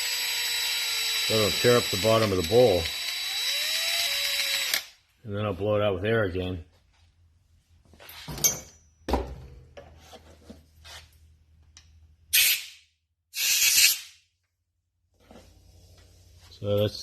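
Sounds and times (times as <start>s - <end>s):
compressed air blasts hissing: 12.3s - 12.8s, 13.4s - 14.2s.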